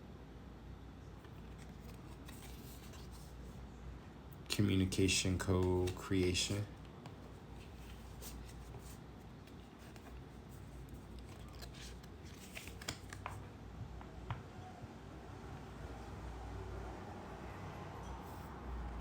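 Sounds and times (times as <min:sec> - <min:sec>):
low steady hum: 0:00.0 - 0:19.0
cards being handled: 0:01.2 - 0:03.5, 0:04.6 - 0:13.5
light card clicks: 0:11.1 - 0:13.4.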